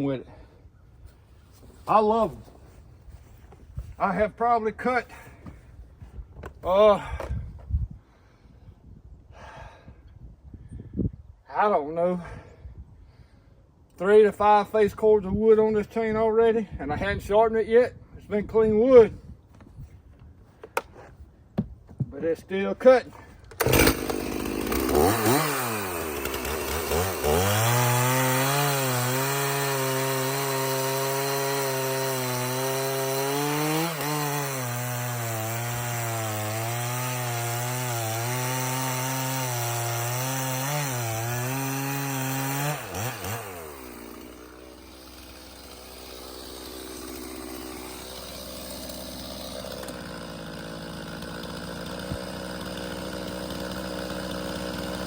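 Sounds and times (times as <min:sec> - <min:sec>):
chainsaw cutting wood: 0:23.1 - 0:55.0
chainsaw idling: 0:23.5 - 0:55.0.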